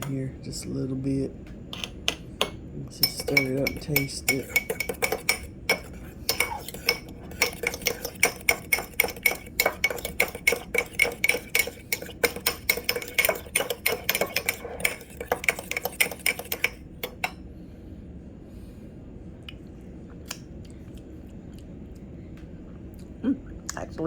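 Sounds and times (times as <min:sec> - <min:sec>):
spoon stirring sauce in a bowl: 0:01.7 - 0:17.4.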